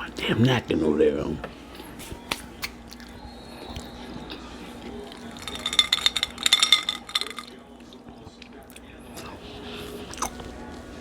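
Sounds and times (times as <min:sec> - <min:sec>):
glass tableware clinking: 0:05.2 - 0:07.6.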